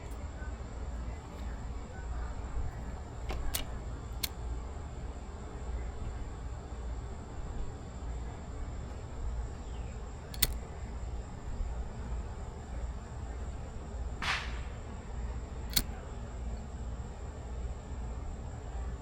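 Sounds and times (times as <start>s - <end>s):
low outdoor rumble: 0.0s - 19.0s
sharp click: 3.3s - 4.4s, 10.3s - 10.7s, 14.2s - 14.8s, 15.6s - 16.0s.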